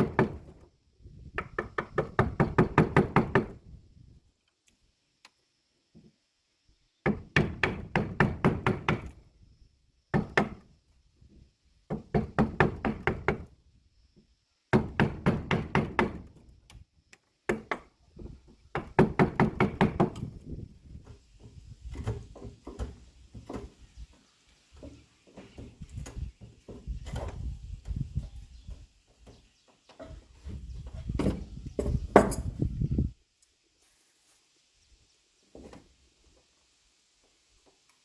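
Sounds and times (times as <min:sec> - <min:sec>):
hammering on wood: 0:01.4 - 0:03.6, 0:07.0 - 0:09.1, 0:10.1 - 0:10.6, 0:11.9 - 0:13.5, 0:14.7 - 0:16.3, 0:18.7 - 0:20.3.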